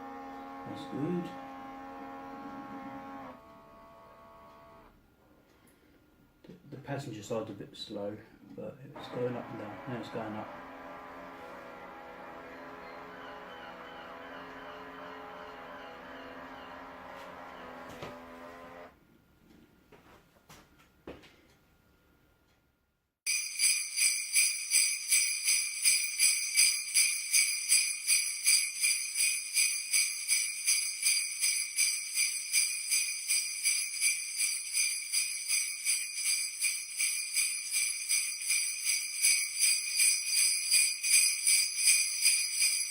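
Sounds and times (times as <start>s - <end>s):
sleigh bells jingling: 9.0s - 17.9s, 23.3s - 42.9s.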